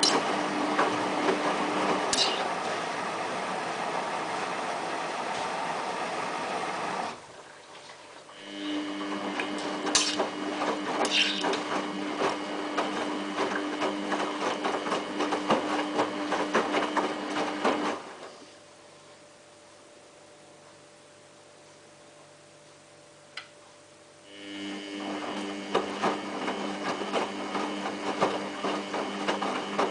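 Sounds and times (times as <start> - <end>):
water rushing in washing machine: 0.0 - 18.4, 24.6 - 29.9
washing machine motor hum: 0.0 - 19.4, 24.1 - 29.9.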